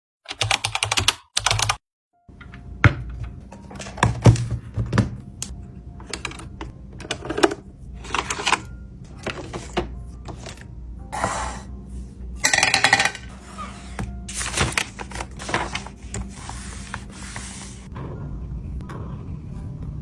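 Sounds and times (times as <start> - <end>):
plastic pens rattling clicks: 3.6 - 10.6, 12.4 - 17.9.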